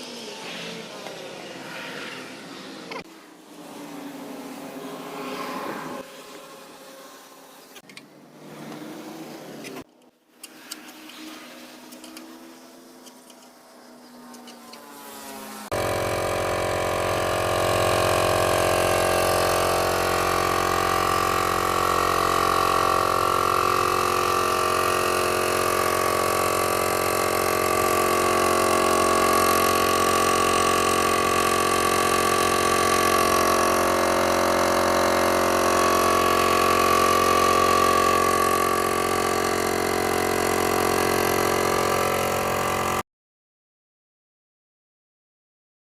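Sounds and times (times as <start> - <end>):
blower motor humming and whining: 0.0 - 9.9, 10.5 - 43.0.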